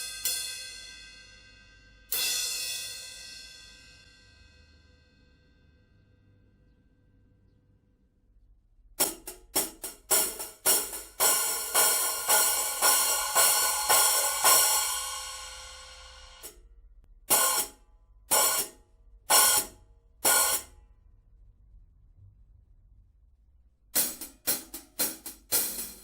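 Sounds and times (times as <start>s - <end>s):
cymbal strikes: 9.0s - 16.5s, 17.3s - 20.7s.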